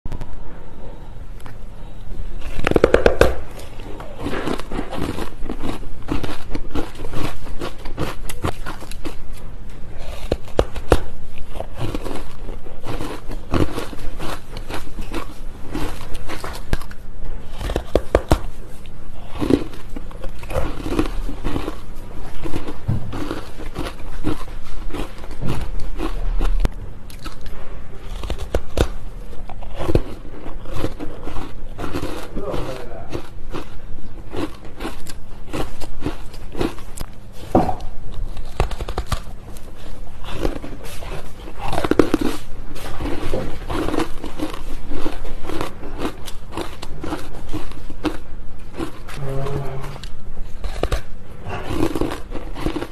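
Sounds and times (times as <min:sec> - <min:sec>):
teeth crunching ice: 0:02.4 - 0:49.3, 0:50.5 - 0:52.9.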